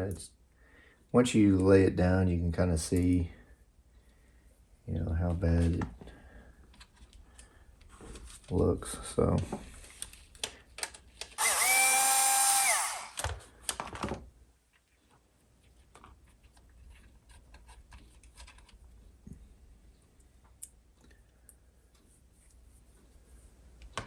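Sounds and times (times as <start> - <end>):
power tool motor running: 11.4 - 13.2.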